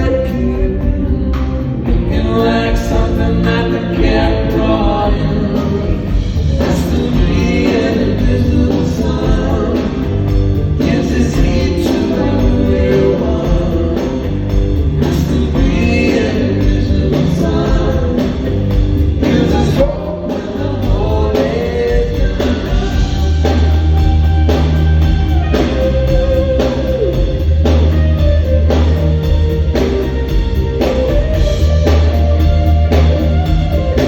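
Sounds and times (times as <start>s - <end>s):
man singing: 0.0s - 24.1s
bass guitar: 0.0s - 34.0s
electric guitar: 0.0s - 34.0s.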